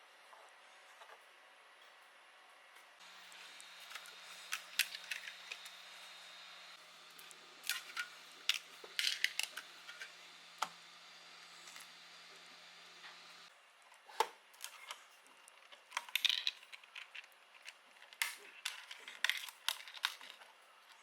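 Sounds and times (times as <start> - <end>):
plastic parts clicking and tapping: 3.8 - 5.8, 7.2 - 10.8, 15.6 - 20.5.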